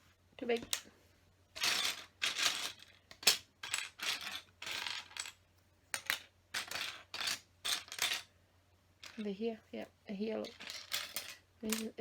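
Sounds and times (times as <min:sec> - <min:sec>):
plastic bricks clattering: 0:01.6 - 0:08.3, 0:10.4 - 0:12.0.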